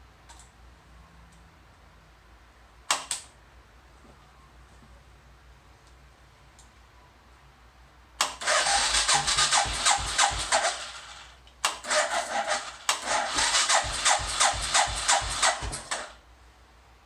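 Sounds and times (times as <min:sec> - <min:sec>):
motorcycle engine cranking on starter: 0:08.2 - 0:16.2.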